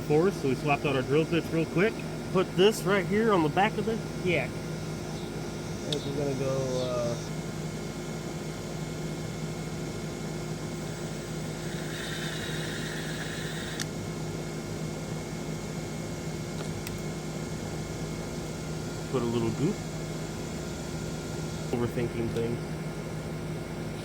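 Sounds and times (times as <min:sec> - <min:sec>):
fan-like hum: 0:00.0 - 0:24.0
cordless drill drilling plastic: 0:11.6 - 0:13.9.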